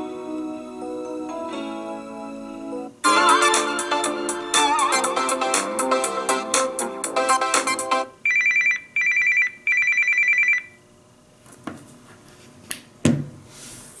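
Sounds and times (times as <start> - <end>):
melodic phone ringtone: 0.0 - 10.8
electronic telephone bell ringing: 8.2 - 10.8.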